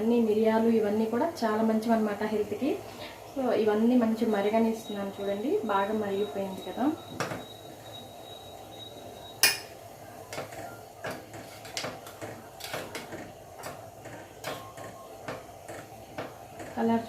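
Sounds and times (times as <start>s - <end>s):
pot boiling and bubbling: 0.0s - 17.0s
utensil clinking on pot: 9.4s - 13.8s.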